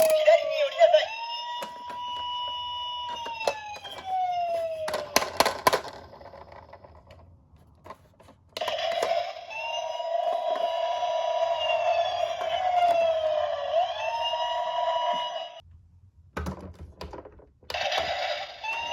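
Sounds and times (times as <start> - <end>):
toy siren wailing: 0.0 - 6.2, 8.6 - 15.6, 17.7 - 18.9.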